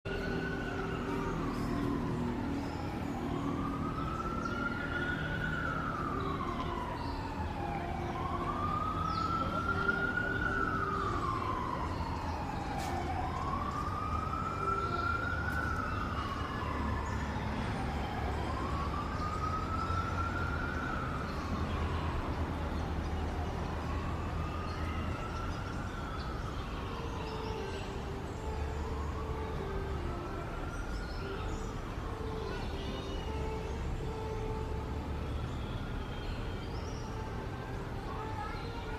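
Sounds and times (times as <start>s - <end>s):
wailing emergency siren: 0.1s - 38.9s.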